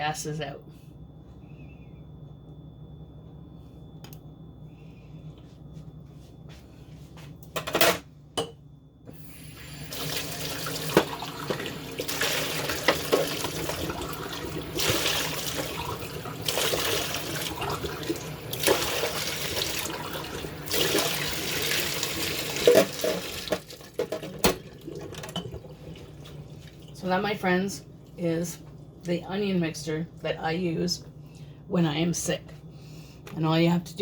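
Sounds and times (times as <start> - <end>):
tap water running into sink: 9.4 - 26.9.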